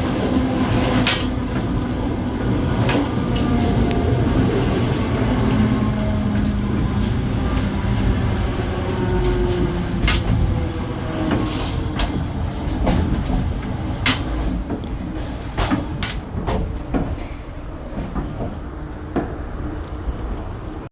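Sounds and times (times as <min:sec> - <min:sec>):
electric train rumbling: 0:00.0 - 0:20.9
sharp clicks and knocks: 0:11.3 - 0:17.4.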